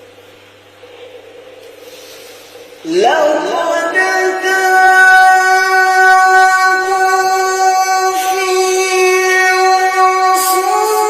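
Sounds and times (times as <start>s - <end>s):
man reciting in long high note: 2.6s - 11.0s.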